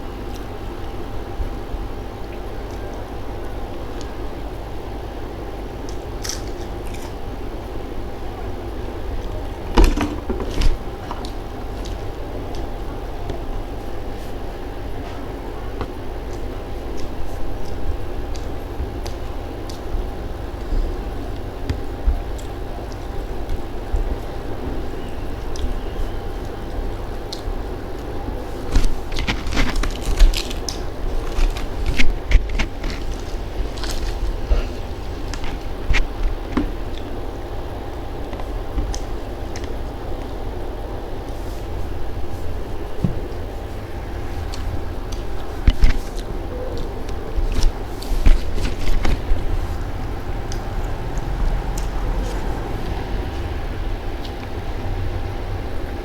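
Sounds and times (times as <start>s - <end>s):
steady low hum: 0.0s - 56.0s
person chewing crisp food: 28.5s - 37.1s
loud crunches: 28.6s - 36.4s, 47.4s - 53.4s.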